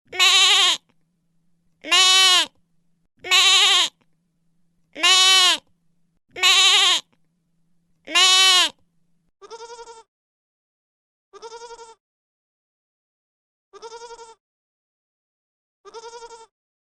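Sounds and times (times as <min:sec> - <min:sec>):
adult goat bleating: 0:00.1 - 0:00.8, 0:01.8 - 0:02.6, 0:03.2 - 0:04.0, 0:05.0 - 0:05.7, 0:06.3 - 0:07.1, 0:08.1 - 0:08.8, 0:09.4 - 0:10.1, 0:11.4 - 0:12.0, 0:13.8 - 0:14.4, 0:15.9 - 0:16.5
baby goat bleating: 0:00.1 - 0:00.9, 0:01.8 - 0:02.6, 0:03.2 - 0:04.0, 0:05.0 - 0:05.7, 0:06.3 - 0:07.1, 0:08.1 - 0:08.8, 0:09.4 - 0:10.1, 0:11.4 - 0:12.0, 0:13.8 - 0:14.4, 0:15.9 - 0:16.5.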